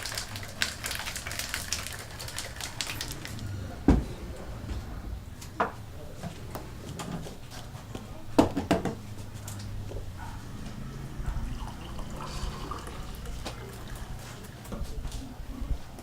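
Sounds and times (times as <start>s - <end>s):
coffee shaken in a container: 0.0s - 3.5s, 11.5s - 14.6s
liquid sloshing: 0.0s - 7.7s, 9.1s - 14.6s
low steady hum: 0.5s - 14.5s.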